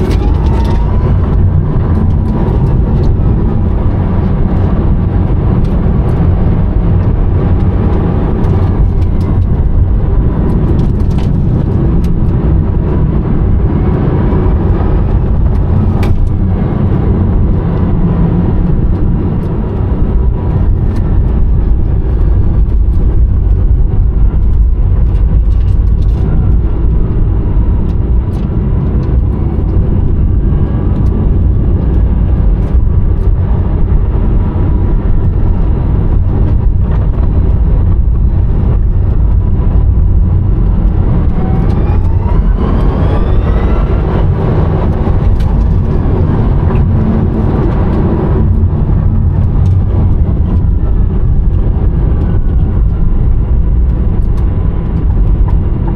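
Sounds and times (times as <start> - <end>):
road and tyre noise: 0.0 - 55.9
electric motor whine: 40.2 - 49.8.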